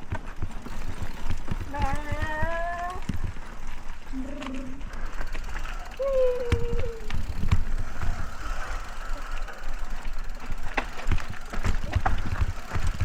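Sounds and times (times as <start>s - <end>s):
bike knocks and rattles: 0.0s - 13.0s
bike tyres rumbling on dirt: 0.0s - 13.0s
wind: 0.0s - 13.0s.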